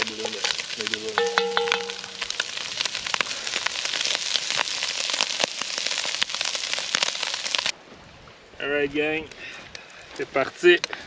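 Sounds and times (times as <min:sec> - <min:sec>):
bacon sizzling and popping: 0:00.0 - 0:07.8.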